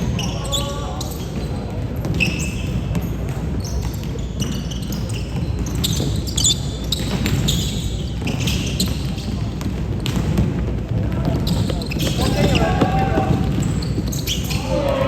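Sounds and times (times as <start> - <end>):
voices: 0.0 - 2.6, 10.9 - 15.0
basketball bouncing on court: 0.0 - 15.0.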